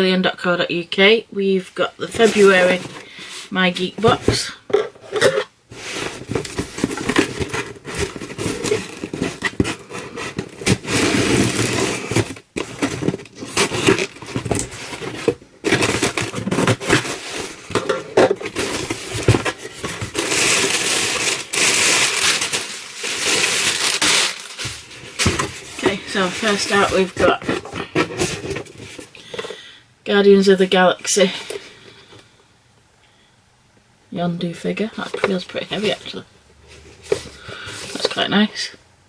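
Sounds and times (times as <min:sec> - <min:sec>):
packaging crackling and tearing: 0:05.2 - 0:17.7, 0:18.4 - 0:29.0.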